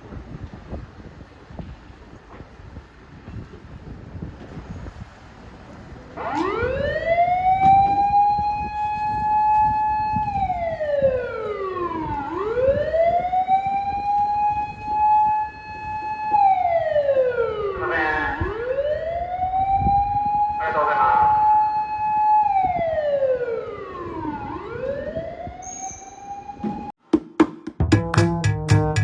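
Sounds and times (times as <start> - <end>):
fire engine wailing siren: 6.1 - 26.9.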